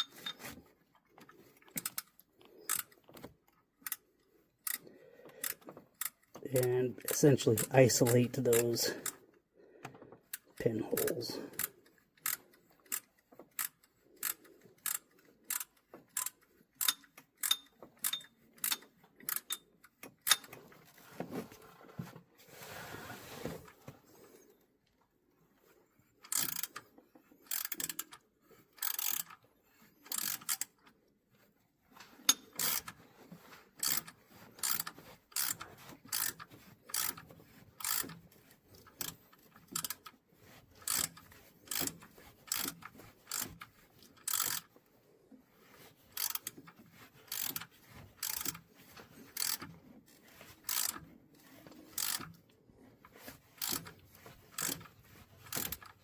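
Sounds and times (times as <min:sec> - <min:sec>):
ratchet wrench clicking: 0:01.8 - 0:03.0, 0:04.6 - 0:04.8, 0:05.4 - 0:09.2, 0:11.0 - 0:19.6, 0:20.2 - 0:20.5, 0:26.2 - 0:26.8, 0:27.4 - 0:29.4, 0:30.0 - 0:30.8, 0:32.2 - 0:33.0, 0:33.8 - 0:37.2, 0:37.8 - 0:38.2, 0:38.8 - 0:40.1, 0:40.8 - 0:44.7, 0:46.1 - 0:46.7, 0:47.3 - 0:48.6, 0:49.3 - 0:49.7, 0:50.6 - 0:51.0, 0:51.9 - 0:52.3, 0:53.6 - 0:56.0.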